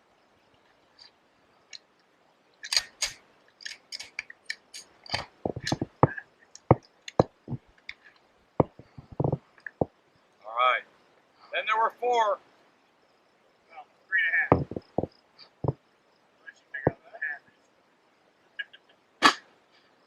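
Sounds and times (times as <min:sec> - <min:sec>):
sharp clicks and knocks: 0:02.6 - 0:08.0, 0:08.6 - 0:09.9, 0:14.5 - 0:15.8.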